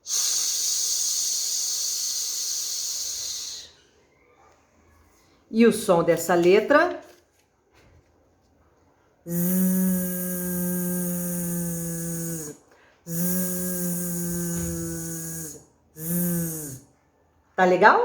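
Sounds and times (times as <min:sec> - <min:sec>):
woman making buzzing zzz sound: 0:09.3 - 0:16.8.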